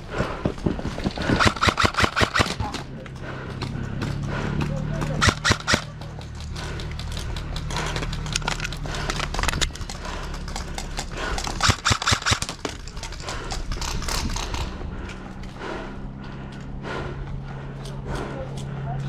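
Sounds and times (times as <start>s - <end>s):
airsoft guns firing: 1.2s - 2.8s, 5.2s - 5.9s, 11.6s - 12.8s.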